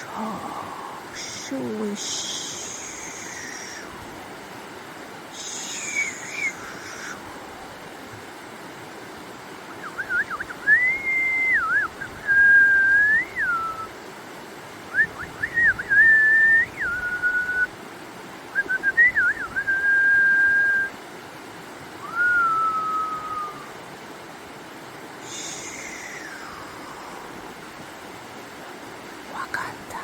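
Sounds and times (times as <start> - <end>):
person whistling a tune: 9.9 - 13.9, 14.9 - 17.7, 18.6 - 20.9, 22.0 - 23.7.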